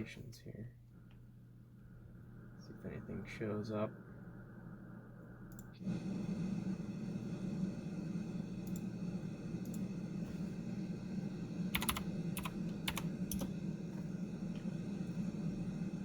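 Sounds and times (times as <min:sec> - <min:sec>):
computer keyboard clicks: 0:11.7 - 0:13.5.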